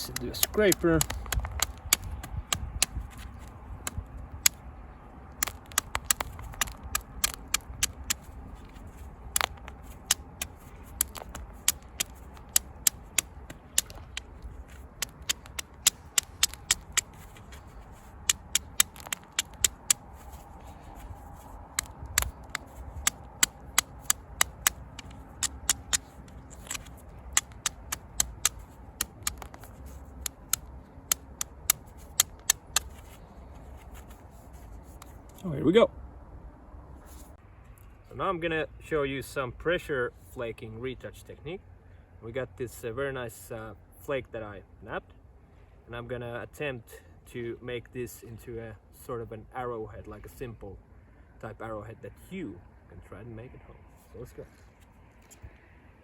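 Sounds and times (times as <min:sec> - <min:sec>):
stone tapping flint: 0:00.0 - 0:04.6, 0:05.3 - 0:34.2.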